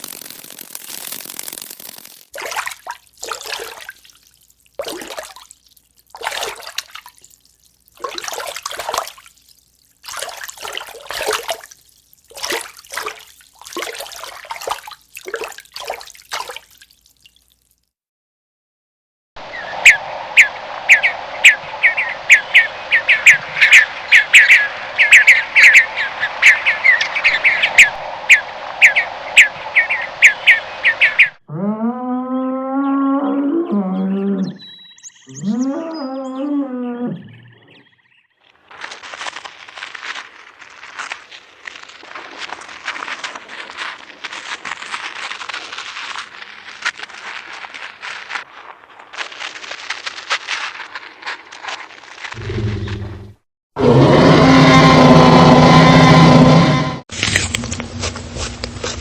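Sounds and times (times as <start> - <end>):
bird chirping rapidly: 34.4 - 35.6.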